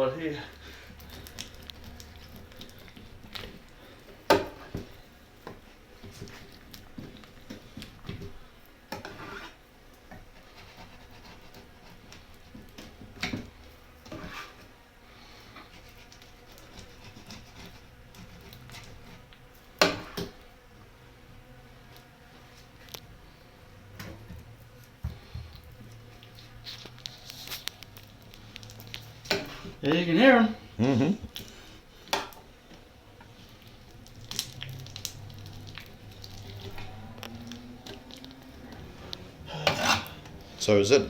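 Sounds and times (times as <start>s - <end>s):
frames rubbing and scraping: 9.0s - 9.6s, 33.2s - 41.0s.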